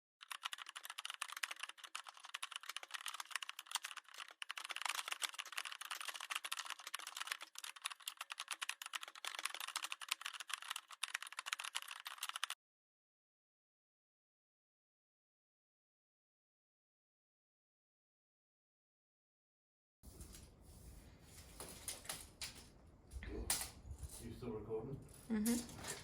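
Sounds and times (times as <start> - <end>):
rapid clicking and rattling: 0.2 - 12.6.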